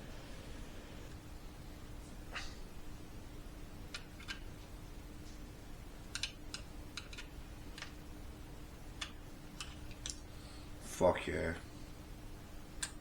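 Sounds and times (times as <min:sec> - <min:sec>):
plastic parts clicking: 0:06.1 - 0:08.0, 0:09.0 - 0:10.2.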